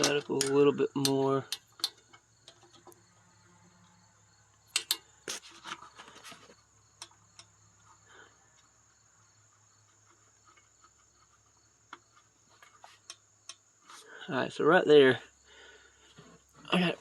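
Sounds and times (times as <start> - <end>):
hand tools clicking on metal: 0.0 - 2.9, 4.7 - 5.8
cricket chirring: 0.0 - 17.0.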